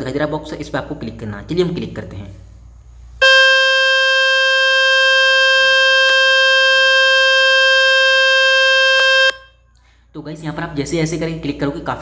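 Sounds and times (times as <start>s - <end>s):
loud buzzing tone from phone: 3.2s - 9.6s.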